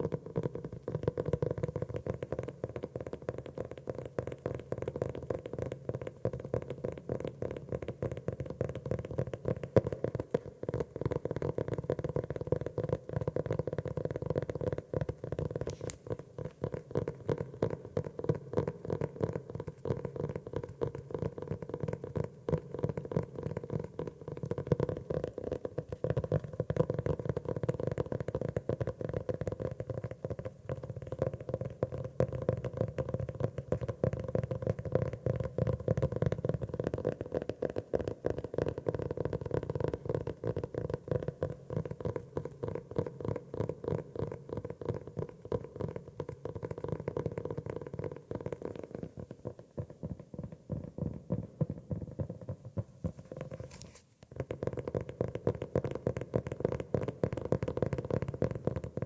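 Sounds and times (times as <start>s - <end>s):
rapid tapping on notebook: 0.0s - 59.0s.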